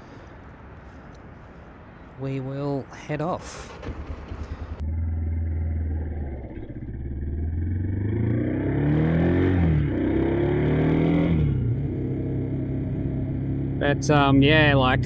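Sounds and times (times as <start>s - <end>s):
motorcycle engine accelerating: 3.7s - 15.0s.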